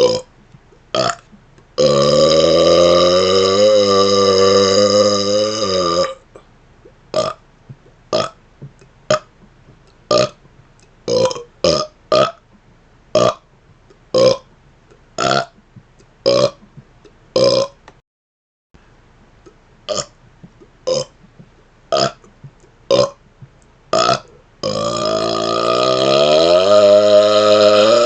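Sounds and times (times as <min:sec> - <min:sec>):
man burping: 0:00.0 - 0:00.3, 0:00.9 - 0:01.2, 0:01.8 - 0:06.4, 0:07.2 - 0:07.4, 0:08.1 - 0:08.4, 0:11.1 - 0:12.4, 0:13.2 - 0:13.4, 0:14.2 - 0:14.5, 0:15.2 - 0:15.6, 0:16.2 - 0:16.7, 0:17.4 - 0:17.8, 0:20.9 - 0:21.2, 0:21.9 - 0:22.3, 0:22.9 - 0:23.2, 0:23.9 - 0:28.0.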